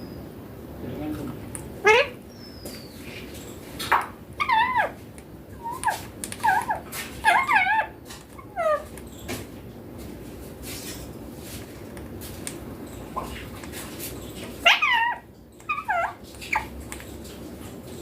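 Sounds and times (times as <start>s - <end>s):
parakeet squeaky calls: 1.8s - 3.0s, 3.9s - 5.0s, 5.6s - 8.9s, 14.6s - 16.7s.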